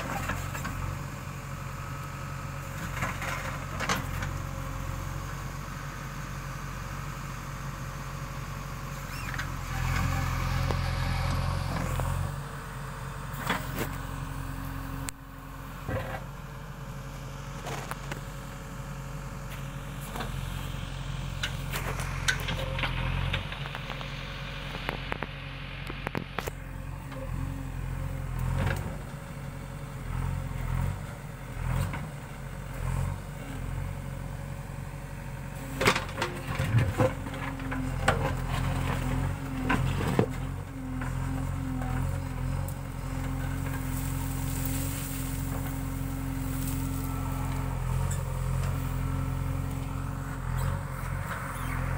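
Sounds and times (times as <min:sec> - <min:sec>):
diesel engine revving: 0:08.6 - 0:16.1, 0:26.3 - 0:34.9, 0:35.5 - 0:51.9.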